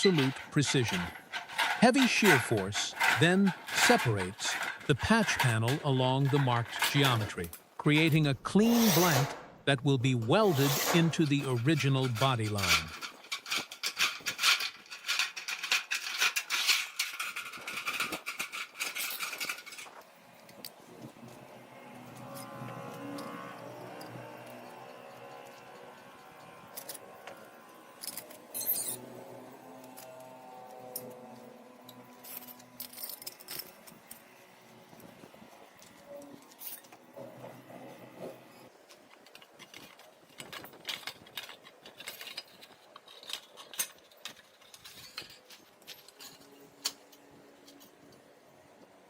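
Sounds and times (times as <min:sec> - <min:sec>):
metal tools clinking: 0:00.0 - 0:09.4, 0:10.3 - 0:20.8, 0:22.2 - 0:34.4, 0:38.8 - 0:48.0
shears cutting sheet metal: 0:00.0 - 0:20.0, 0:21.4 - 0:34.4.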